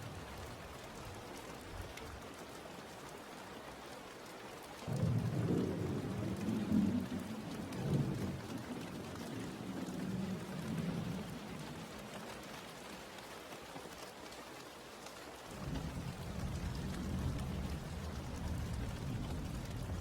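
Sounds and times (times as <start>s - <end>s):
steady rain hiss: 0.0s - 20.0s
low rumble of thunder: 4.9s - 12.2s, 15.5s - 20.0s.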